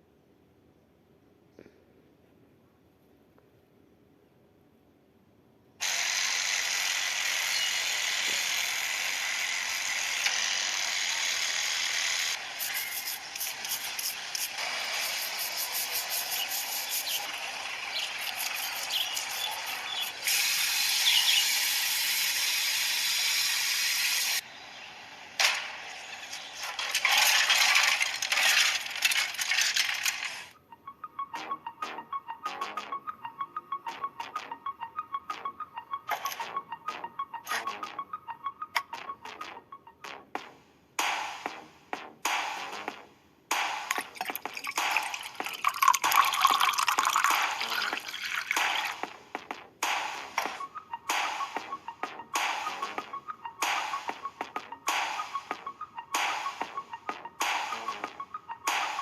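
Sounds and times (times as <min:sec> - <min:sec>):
loud steady hiss: 0:12.4 - 0:24.4
rapid rattling clicks: 0:26.7 - 0:30.5.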